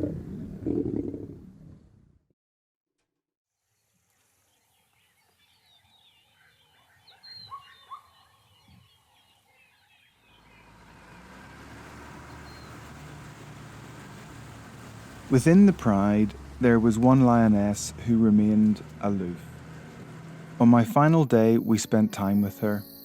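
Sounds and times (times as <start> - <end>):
bird calls and chirps: 3.8 - 10.8, 12.3 - 12.9
whistled bird notes: 4.5 - 10.7, 12.3 - 12.8.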